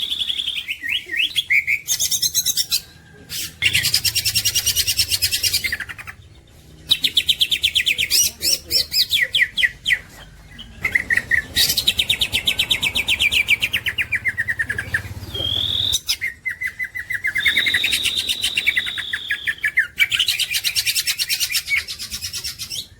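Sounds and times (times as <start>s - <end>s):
bird trilling and chattering: 0.0s - 22.9s
held whistle-like bird note: 17.3s - 19.8s.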